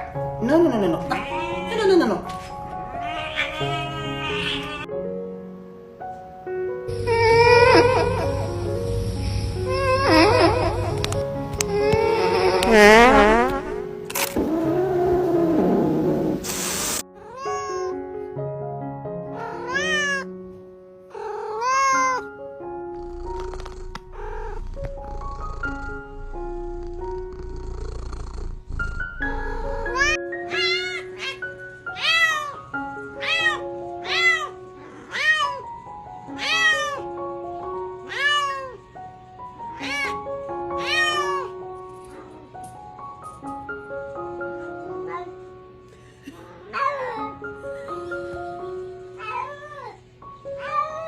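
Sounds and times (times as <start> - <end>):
background music: 0.0 - 45.8
cat meowing: 1.0 - 2.0, 2.8 - 4.9, 6.9 - 8.6, 17.2 - 18.0, 19.4 - 20.3, 21.2 - 22.3, 29.2 - 31.4, 32.0 - 32.6, 33.2 - 35.6, 36.4 - 37.1, 38.1 - 38.8, 39.8 - 40.2, 40.8 - 41.6, 49.2 - 50.0, 50.6 - 51.0.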